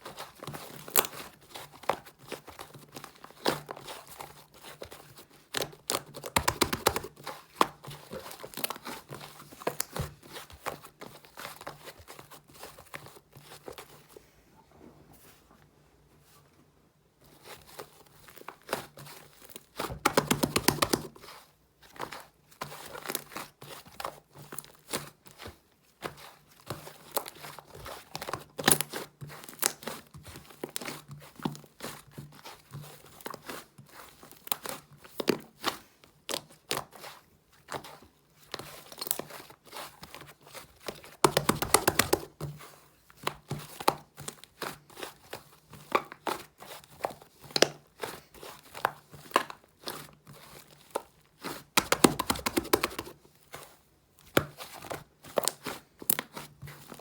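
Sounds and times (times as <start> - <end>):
slime squished by hand: 51.4 - 53.2.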